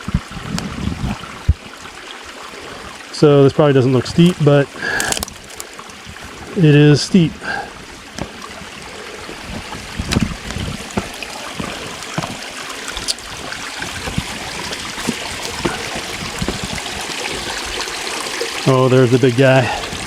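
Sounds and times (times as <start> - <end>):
creek running: 0.0 - 20.0
footsteps on a slope: 8.1 - 17.4.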